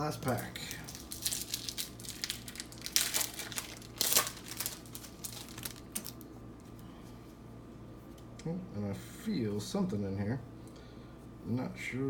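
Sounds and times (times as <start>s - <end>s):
wrapper tearing and crinkling: 0.0s - 6.3s.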